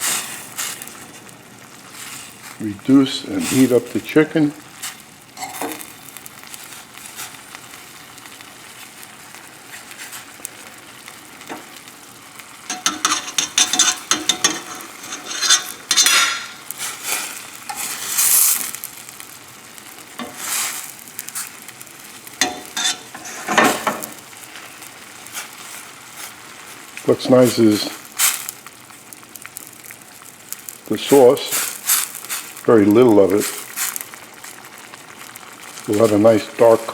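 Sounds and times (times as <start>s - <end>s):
sauce sizzling in a pan: 0.0s - 36.9s
utensil scraping in a pan: 4.8s - 7.5s, 9.6s - 36.4s.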